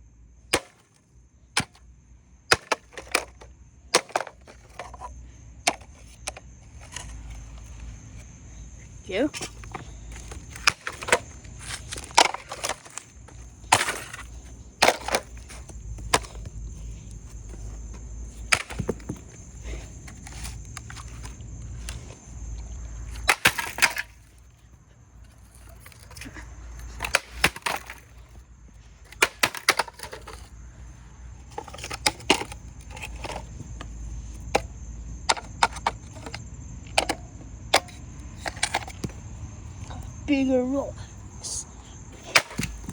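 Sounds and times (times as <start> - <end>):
strikes on plastic body: 9.4 - 21.3.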